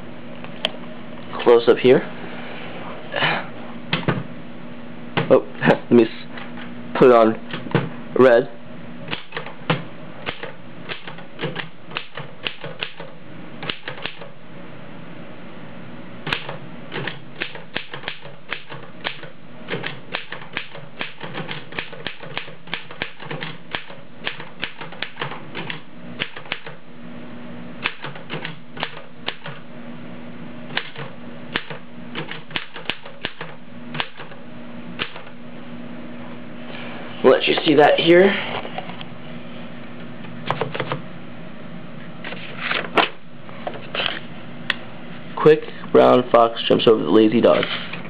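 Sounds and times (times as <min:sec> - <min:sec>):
typewriter key strikes: 0:16.3 - 0:26.7.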